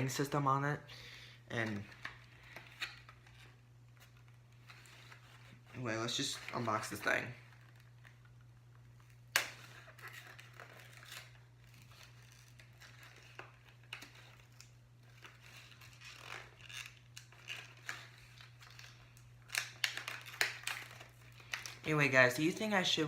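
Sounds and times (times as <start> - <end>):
box rustling and crinkling: 1.5 - 23.0
packaging snapping: 6.2 - 21.9.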